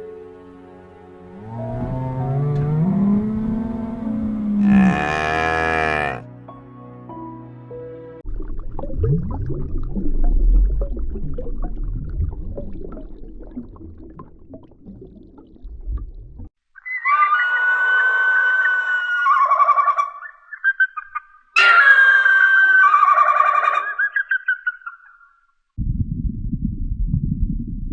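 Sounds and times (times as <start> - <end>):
animal low rumbling growl: 1.3 - 6.2
animal high warbling calls: 4.6 - 6.2, 16.8 - 25.4.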